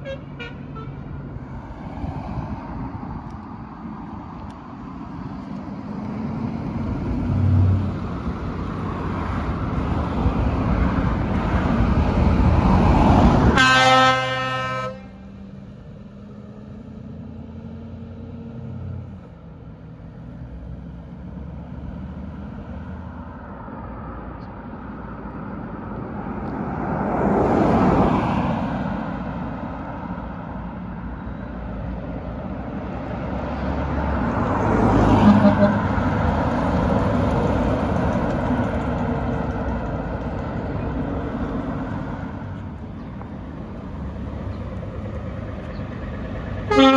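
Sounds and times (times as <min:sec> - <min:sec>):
truck air horn blast: 0:00.0 - 0:01.0, 0:13.5 - 0:15.3, 0:35.1 - 0:36.0, 0:46.6 - 0:46.9
truck engine passing: 0:03.8 - 0:23.6, 0:25.5 - 0:46.9.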